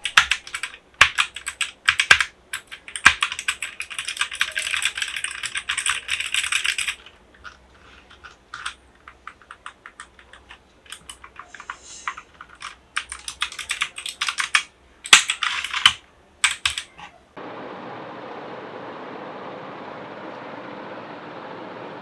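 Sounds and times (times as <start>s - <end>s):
mechanical keyboard typing: 0.0s - 17.1s.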